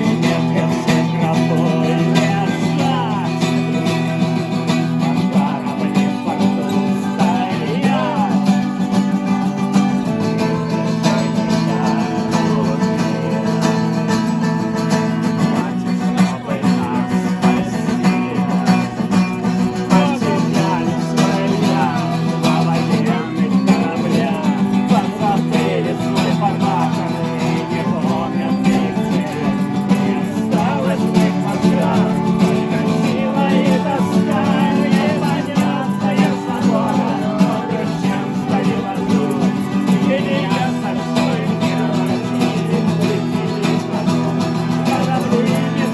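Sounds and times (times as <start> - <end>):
acoustic guitar music: 0.0 - 45.9.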